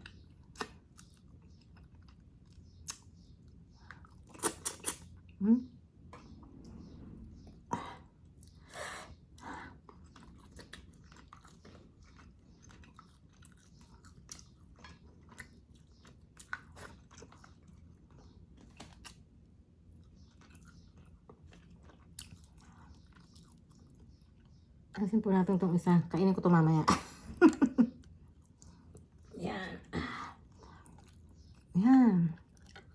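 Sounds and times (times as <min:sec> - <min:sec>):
lip smacks and wet clicks: 0:00.0 - 0:05.3
person chewing: 0:00.0 - 0:05.4, 0:08.3 - 0:24.7, 0:30.4 - 0:31.7, 0:32.4 - 0:32.9
faint low hum: 0:00.0 - 0:32.9.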